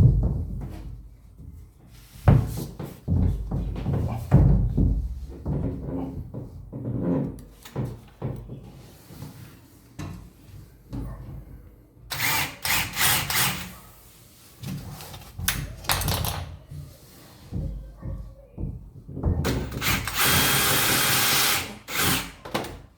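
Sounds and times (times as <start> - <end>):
power drill running: 12.1 - 13.6, 19.6 - 22.4.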